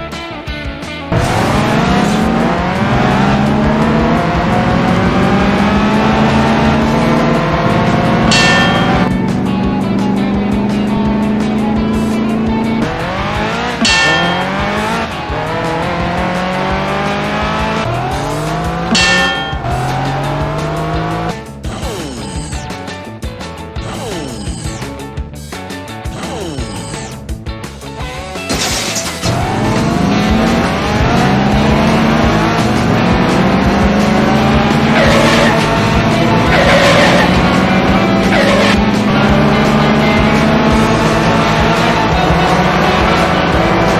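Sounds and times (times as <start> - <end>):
high tyre squeal: 1.1 - 21.3, 29.2 - 43.9
race car engine accelerating: 1.1 - 22.5, 29.2 - 43.9.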